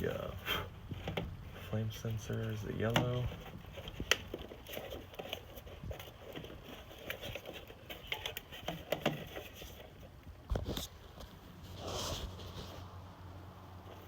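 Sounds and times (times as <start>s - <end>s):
clicks and taps of wire connectors: 2.3s - 4.4s.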